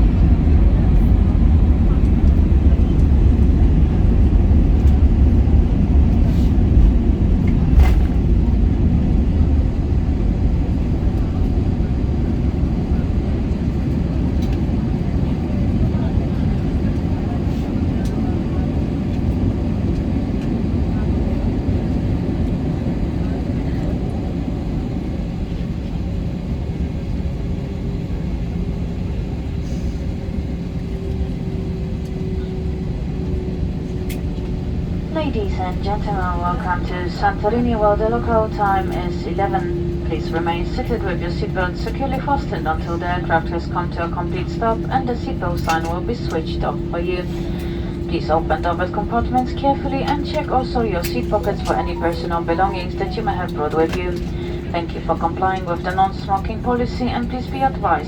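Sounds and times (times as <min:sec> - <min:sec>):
airplane cabin engine rumble: 0:00.0 - 0:58.0
steady hum: 0:34.6 - 0:58.0.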